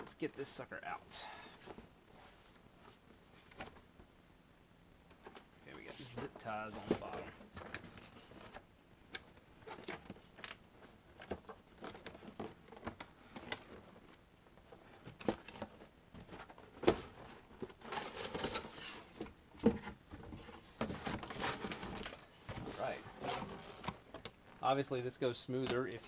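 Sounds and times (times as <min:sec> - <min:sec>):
packaging rustling: 0:20.6 - 0:24.6.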